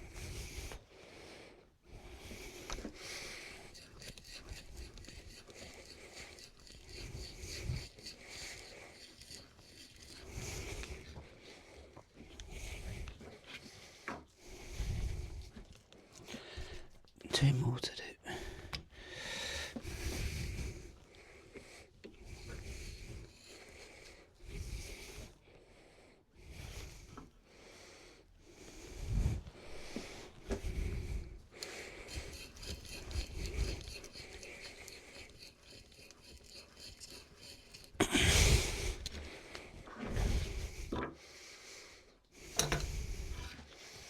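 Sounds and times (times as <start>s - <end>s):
hand tool scraping wood: 2.3s - 11.3s, 22.1s - 25.3s, 29.6s - 39.4s
fine rapid rasping: 2.4s - 11.2s, 22.3s - 25.0s, 30.6s - 39.2s.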